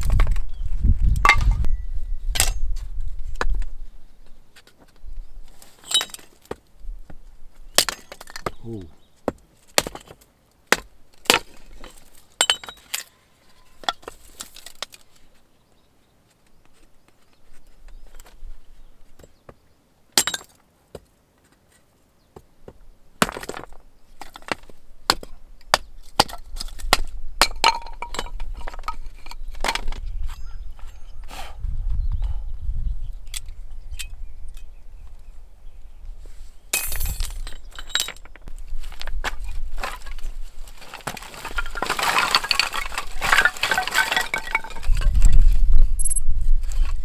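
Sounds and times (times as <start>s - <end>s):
wind buffeting microphone: 0.0s - 4.3s, 27.0s - 37.6s, 44.3s - 47.0s
hard objects clinking and knocking: 23.2s - 30.0s, 36.8s - 46.2s.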